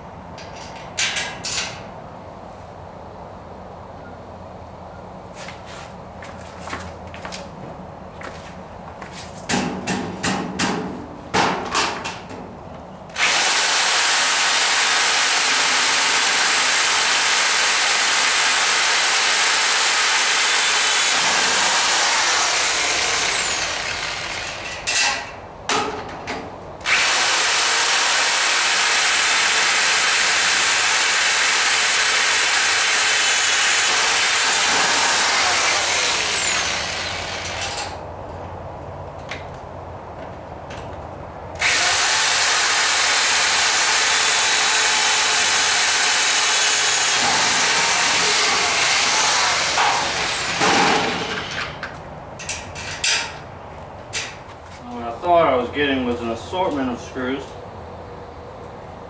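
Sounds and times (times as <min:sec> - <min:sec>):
electric drill boring through metal: 0:13.2 - 0:24.9, 0:26.8 - 0:38.0, 0:41.6 - 0:51.7.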